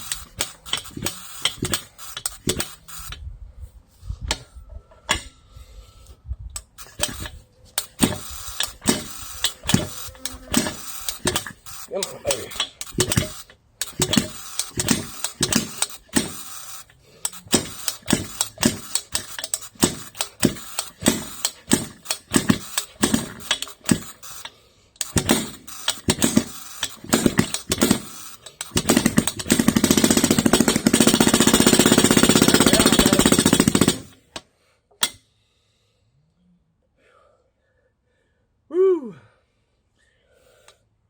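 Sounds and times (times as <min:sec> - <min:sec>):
jackhammer engine popping and hammering: 0:00.0 - 0:03.2, 0:06.6 - 0:34.4.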